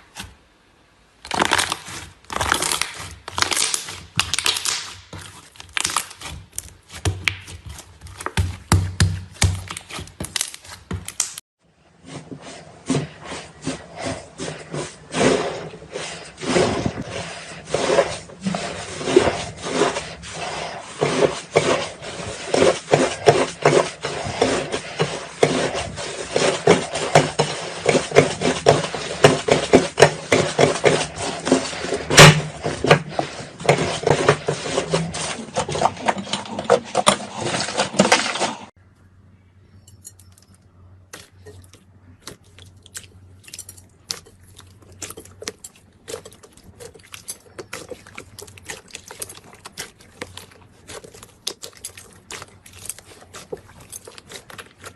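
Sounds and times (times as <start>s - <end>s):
slime crackling and popping: 1.2s - 8.3s.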